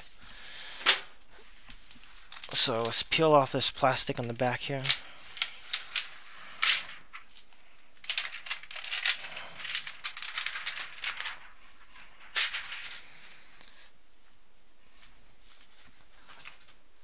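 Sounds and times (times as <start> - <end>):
plastic film peeling and crinkling: 1.5 - 3.2, 4.8 - 13.0.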